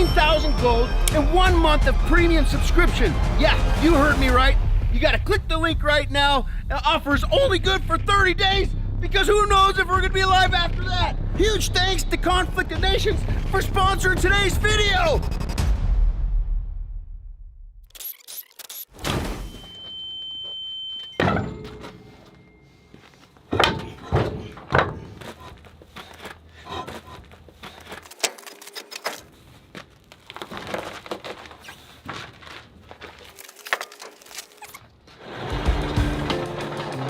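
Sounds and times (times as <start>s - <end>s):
high beep: 0.0s - 1.3s, 19.3s - 21.6s
knocks and thuds: 23.5s - 25.3s.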